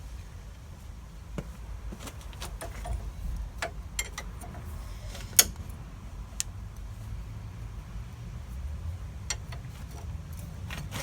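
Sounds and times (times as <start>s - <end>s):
wrench clicking on metal bolt: 2.6s - 5.7s, 9.3s - 10.1s.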